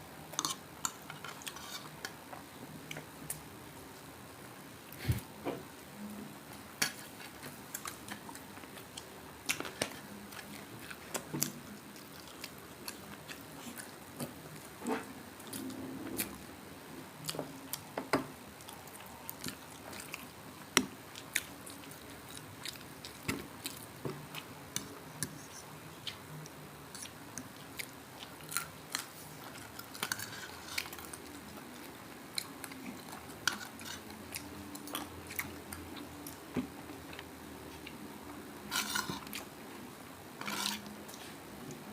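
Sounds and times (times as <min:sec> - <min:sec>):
chewing crispy food: 0:18.5 - 0:38.0.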